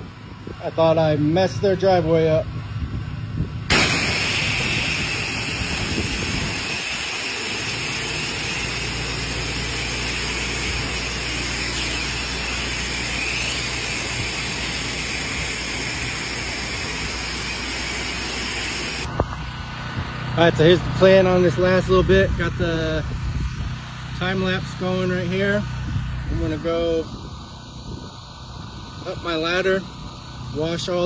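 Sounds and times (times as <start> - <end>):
engine humming: 2.5 - 29.0
pressure washer spraying water: 3.7 - 19.1.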